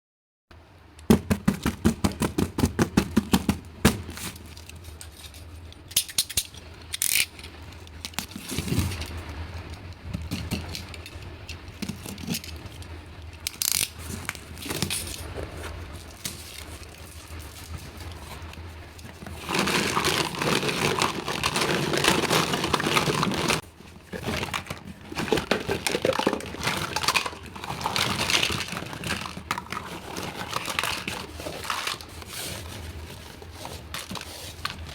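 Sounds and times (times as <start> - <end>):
plastic toy pieces clicking: 5.9 - 8.2
plastic packaging crinkling: 13.3 - 34.9
plastic pieces tapping: 18.5 - 23.6, 24.2 - 32.3.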